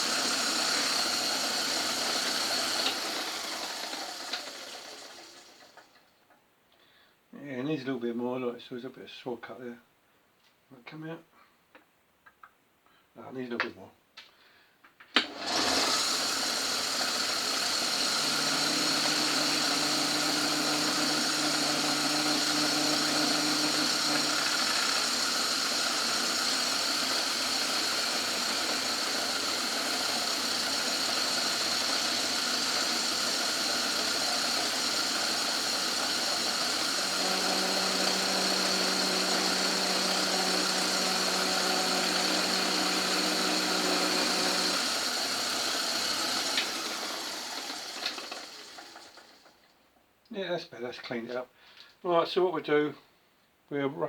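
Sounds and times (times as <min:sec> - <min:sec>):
lathe running with high whine: 0:00.0 - 0:05.8, 0:15.2 - 0:49.5.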